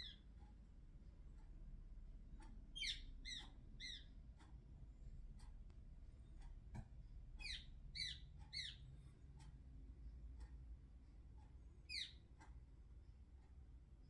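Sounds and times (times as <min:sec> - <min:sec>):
bird chirping: 0:00.0 - 0:00.2, 0:02.8 - 0:04.1, 0:07.4 - 0:08.8, 0:11.9 - 0:12.2
faint ticks: 0:00.0 - 0:13.8.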